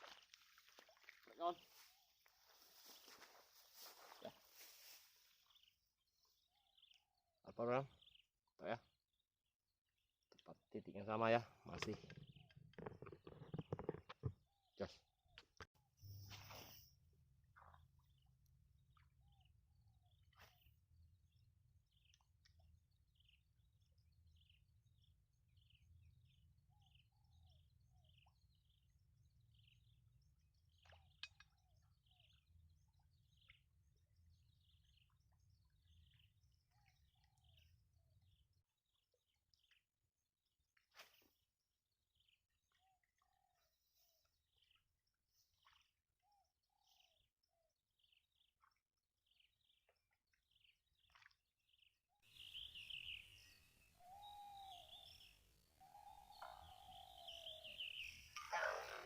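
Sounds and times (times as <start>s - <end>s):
faint bird chirping: 0.1s - 9.3s, 10.4s - 17.0s, 42.2s - 59.0s.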